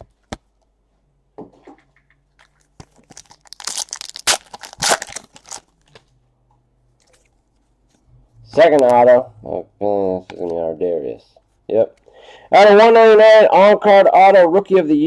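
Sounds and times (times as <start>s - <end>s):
plastic packaging crinkling: 2.4s - 6.1s.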